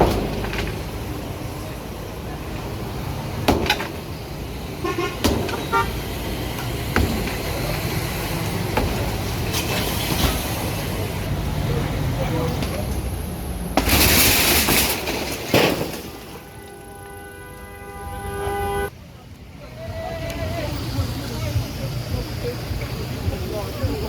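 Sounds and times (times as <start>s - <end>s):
road traffic passing: 0.0s - 24.0s
car horn beeping: 4.7s - 6.9s, 15.7s - 18.9s
sharp knocks: 5.1s - 5.8s, 6.5s - 7.9s.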